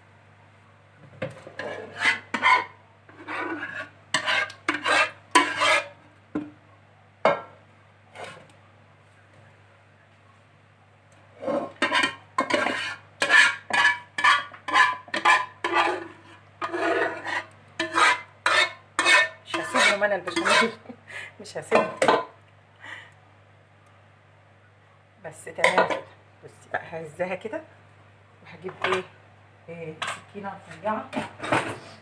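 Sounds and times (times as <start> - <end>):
spoon scraping sauce in glass dish: 1.5 - 6.0, 11.6 - 20.8.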